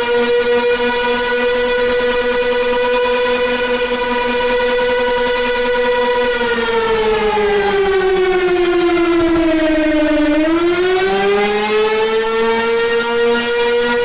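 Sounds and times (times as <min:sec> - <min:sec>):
warning siren: 0:00.0 - 0:14.0.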